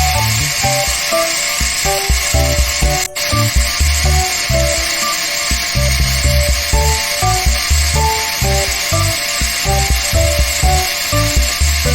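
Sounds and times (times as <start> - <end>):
bass line: 0.0 - 1.0, 2.0 - 4.9, 5.5 - 11.9
background music melody: 0.0 - 11.9.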